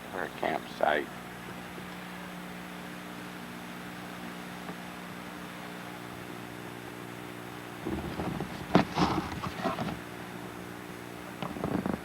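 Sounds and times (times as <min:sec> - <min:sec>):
steady low hum: 0:00.0 - 0:12.0
rustling and knocking: 0:07.8 - 0:10.0.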